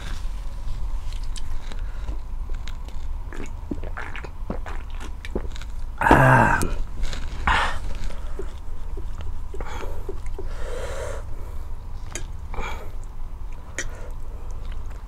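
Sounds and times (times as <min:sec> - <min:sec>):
steady low hum: 0:00.0 - 0:15.0
biting and chewing clicks: 0:01.1 - 0:10.6, 0:12.0 - 0:15.0
throaty vocal sound: 0:03.3 - 0:11.3.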